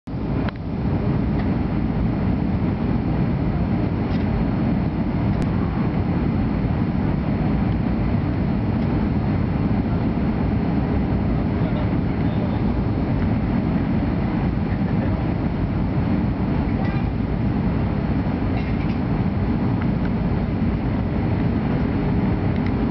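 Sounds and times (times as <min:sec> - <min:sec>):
airliner cabin engine rumble: 0:00.1 - 0:22.9.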